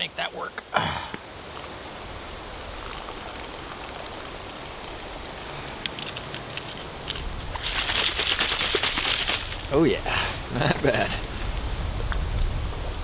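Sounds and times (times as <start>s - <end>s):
water pouring and gurgling: 1.5s - 9.4s.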